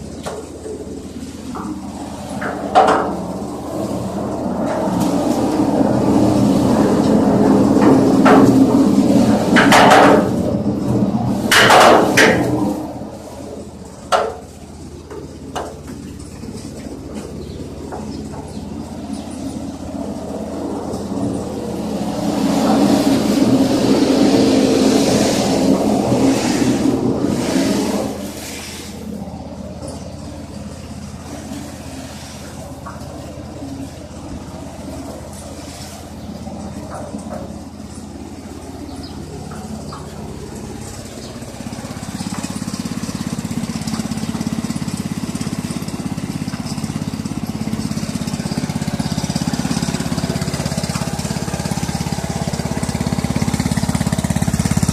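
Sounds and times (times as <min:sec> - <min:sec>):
loud metallic clanks: 0:00.0 - 0:13.2
rushing surges: 0:00.0 - 0:15.1, 0:17.7 - 0:54.9
concrete mixer engine running: 0:00.0 - 0:54.9.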